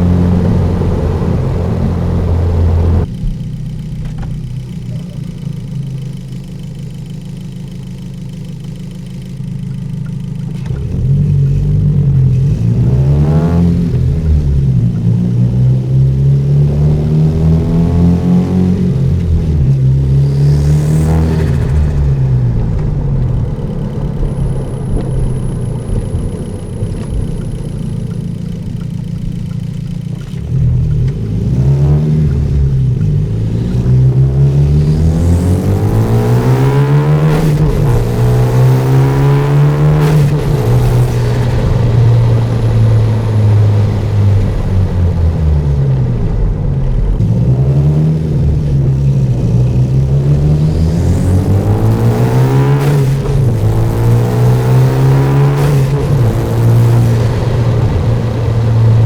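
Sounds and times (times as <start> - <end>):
turbocharged car engine revving: 0.0 - 59.0.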